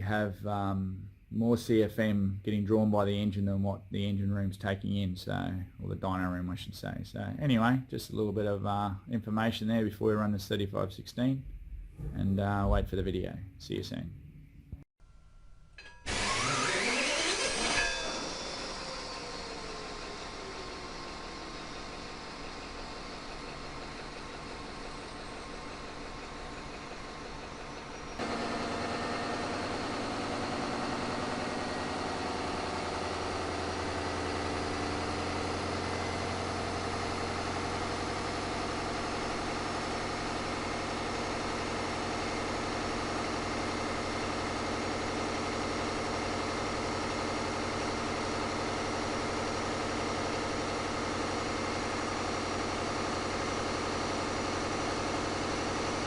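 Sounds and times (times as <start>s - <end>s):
diesel engine running: 16.1s - 56.0s.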